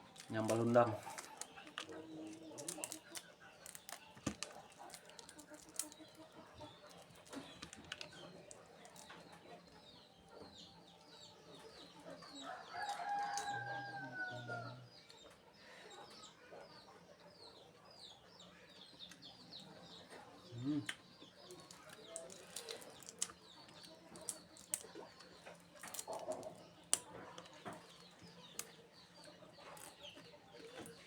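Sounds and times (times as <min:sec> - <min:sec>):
small birds chirping: 0:00.0 - 0:31.0
rooster crowing: 0:12.4 - 0:14.8.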